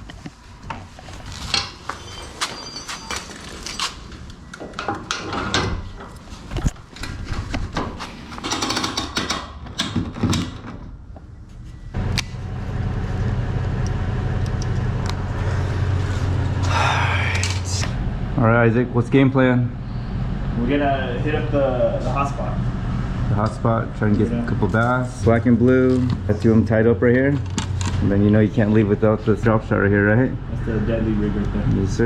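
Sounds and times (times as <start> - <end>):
knocks and clatter: 4.6 - 10.9
motor humming: 11.9 - 18.6.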